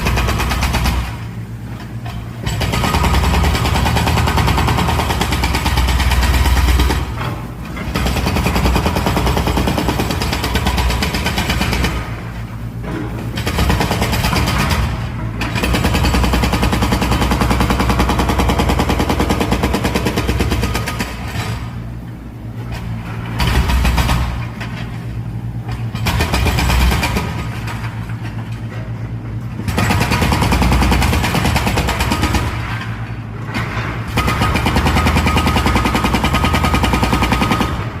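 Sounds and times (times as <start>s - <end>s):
hydraulic breaker hammering masonry: 0.0s - 22.0s, 22.6s - 38.0s.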